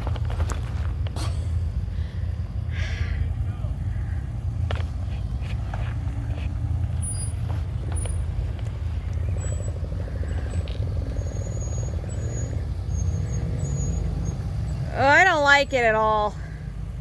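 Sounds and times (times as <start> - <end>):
truck engine low rumble: 0.0 - 17.0.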